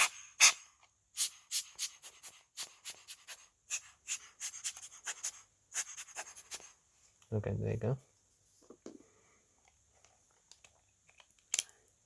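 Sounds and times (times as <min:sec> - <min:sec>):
small parts clicking and crackling: 0:10.0 - 0:12.0.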